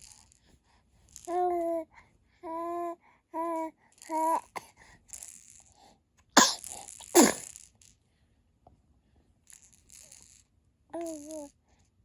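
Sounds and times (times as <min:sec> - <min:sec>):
person sneezing: 0:06.4 - 0:07.5.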